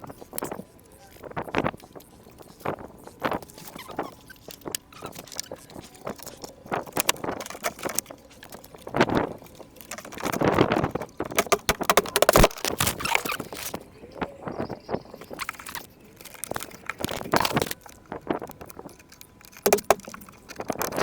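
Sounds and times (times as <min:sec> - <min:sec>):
clicks knocks and scrapes on car door: 0:06.1 - 0:13.8, 0:19.4 - 0:21.0.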